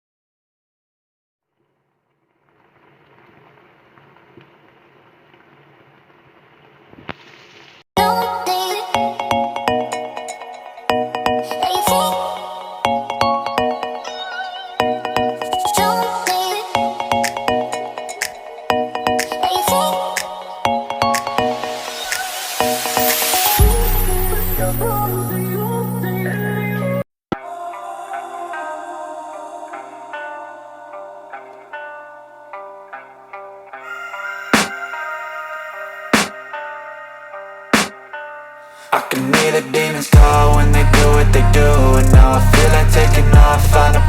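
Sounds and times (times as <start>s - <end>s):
food sizzling in a pan: 2.4s - 7.8s, 21.7s - 24.2s
electronic music: 9.0s - 27.0s, 39.1s - 44.0s
loud electronic music: 38.9s - 44.0s.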